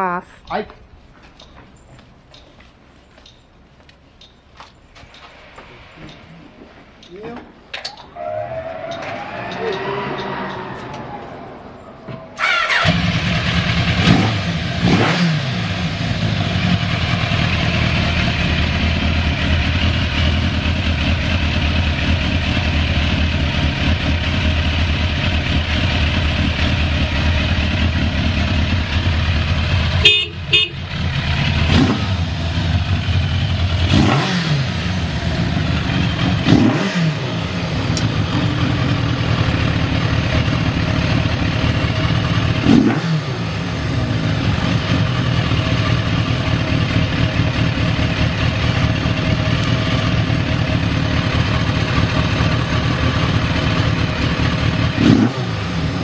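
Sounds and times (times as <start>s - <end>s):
motorcycle engine idling: 12.1s - 14.8s, 15.6s - 34.0s, 34.6s - 56.0s.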